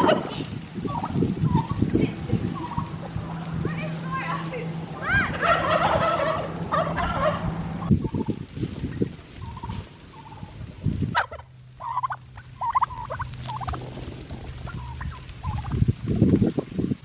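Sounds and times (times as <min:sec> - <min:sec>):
low steady hum: 0:00.0 - 0:16.1
rapid warbling bird calls: 0:00.9 - 0:01.9, 0:02.5 - 0:03.2, 0:05.2 - 0:10.6, 0:11.2 - 0:13.8.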